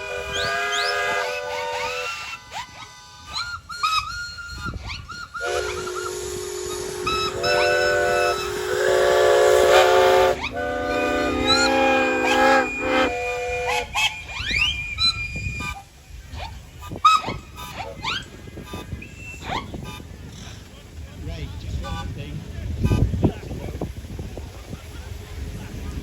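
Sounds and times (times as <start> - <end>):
steam whistles blowing: 0.0 - 16.0, 16.8 - 20.0
hiss of escaping steam: 5.3 - 20.9.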